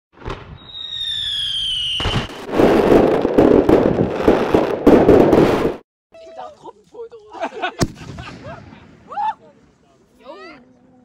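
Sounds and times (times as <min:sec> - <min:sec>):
fireworks crackling and popping: 0:00.2 - 0:05.8, 0:07.8 - 0:09.1
whistling firework: 0:00.2 - 0:05.8.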